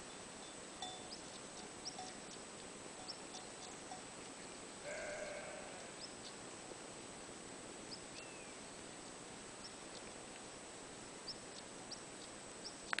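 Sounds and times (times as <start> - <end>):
faint steady hiss: 0.0 - 13.0
small birds chirping: 0.0 - 13.0
bird whistle: 8.2 - 8.6.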